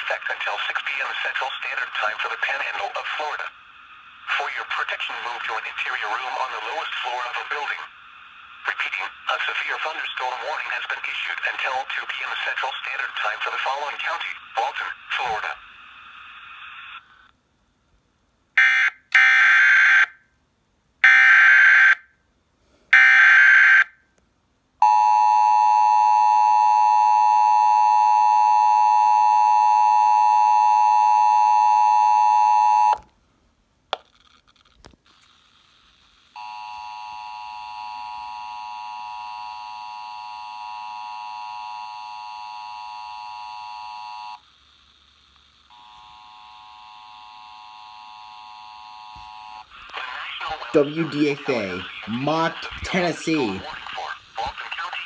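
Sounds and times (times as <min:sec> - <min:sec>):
harsh two-tone alarm: 0:18.6 - 0:20.1, 0:21.0 - 0:22.0, 0:22.9 - 0:23.9, 0:24.8 - 0:33.0, 0:36.4 - 0:44.4, 0:45.7 - 0:49.6.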